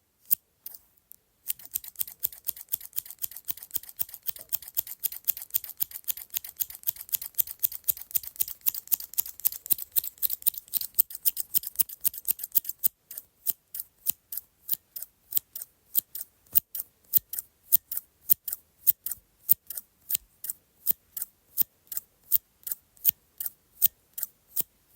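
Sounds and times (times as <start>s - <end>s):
scissors snipping: 1.5s - 13.3s.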